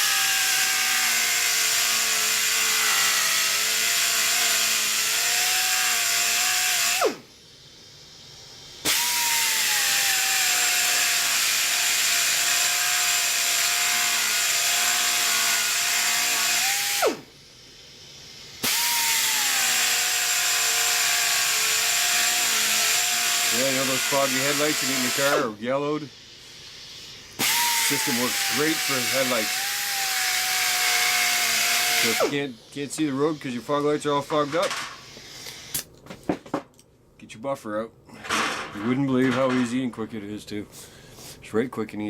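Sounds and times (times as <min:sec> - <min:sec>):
electric buffer whining: 0:18.4 - 0:26.0, 0:27.3 - 0:35.8.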